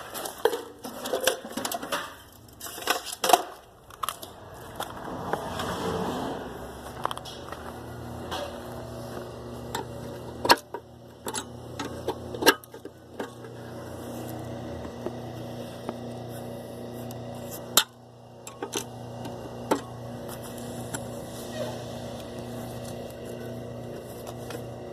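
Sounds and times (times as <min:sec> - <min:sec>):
steady low hum: 0:00.0 - 0:24.9.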